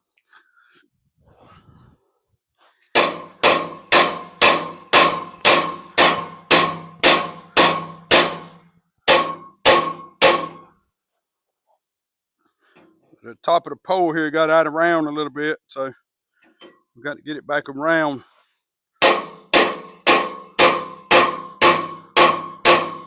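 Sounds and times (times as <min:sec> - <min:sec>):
hammer striking ringing metal pole: 0:03.0 - 0:10.7, 0:19.0 - 0:23.0.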